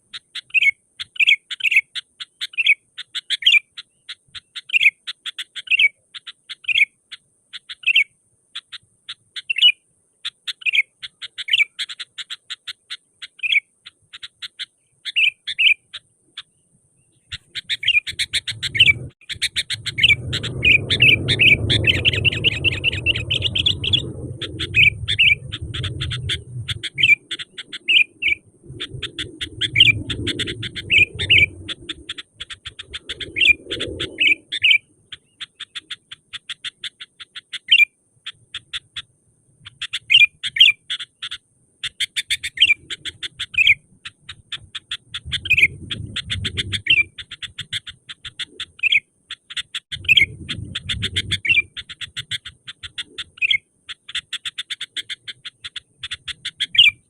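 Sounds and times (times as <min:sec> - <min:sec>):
bulbul singing: 0:00.0 - 0:57.0
low rumble: 0:19.8 - 0:26.8.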